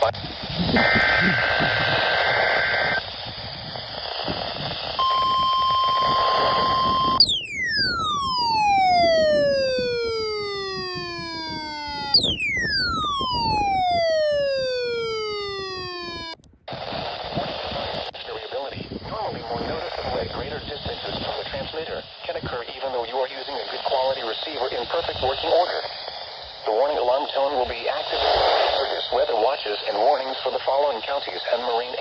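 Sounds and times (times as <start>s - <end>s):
radio hiss: 0.0s - 32.0s
two-tone warbling data burst: 0.7s - 3.0s, 5.0s - 16.4s
steady warning alarm tone: 0.8s - 3.0s, 5.0s - 16.4s
falling tone sweeps: 5.0s - 16.4s.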